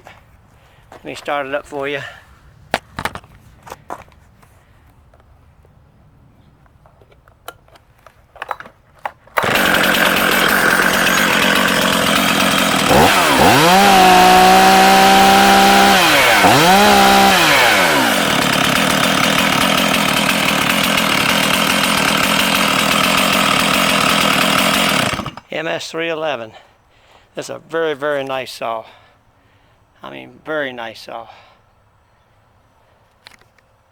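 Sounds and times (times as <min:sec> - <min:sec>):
chainsaw pull-started: 0:09.3 - 0:25.5
chainsaw revving: 0:09.4 - 0:25.5.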